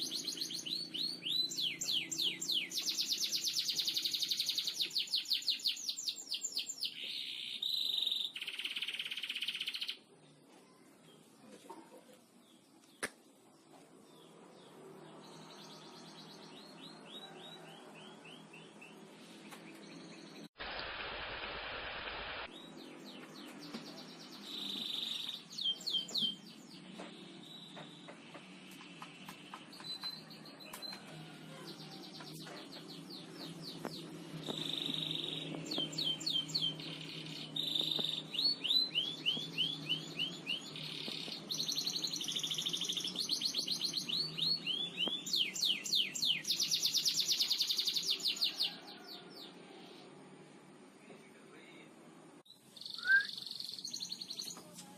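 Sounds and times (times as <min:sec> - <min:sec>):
canary singing trills: 0:00.0 - 0:10.1, 0:22.5 - 0:28.2, 0:31.6 - 0:49.4, 0:52.5 - 0:54.6.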